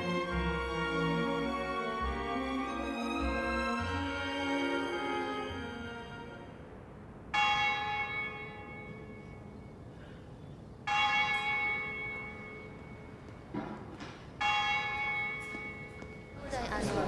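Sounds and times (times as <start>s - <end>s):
bell ringing: 7.3s - 9.8s, 10.9s - 16.6s.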